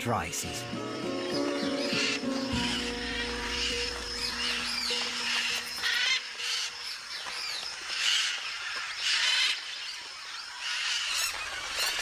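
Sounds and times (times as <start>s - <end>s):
macaws squawking: 0.6s - 6.8s.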